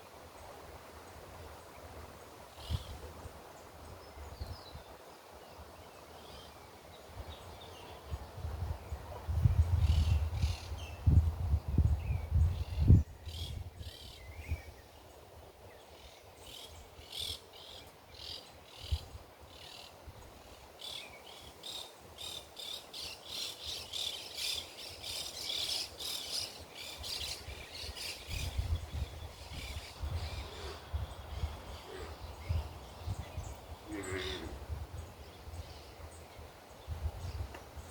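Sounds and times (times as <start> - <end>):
wind rumbling on microphone: 7.0 - 15.8, 26.0 - 37.9
birds chirping: 20.9 - 37.9.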